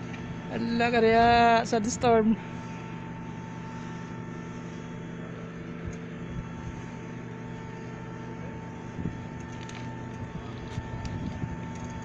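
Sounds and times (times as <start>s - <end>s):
constant high whine: 0.0s - 12.0s.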